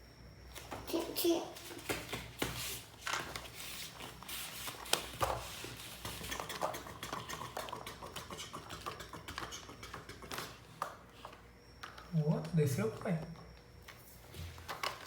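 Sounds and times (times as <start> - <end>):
toys clicking and tapping: 6.0 - 10.6.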